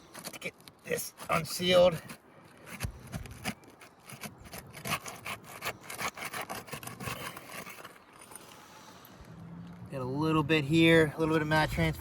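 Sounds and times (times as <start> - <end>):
tool scraping under shingle: 0.0 - 8.9.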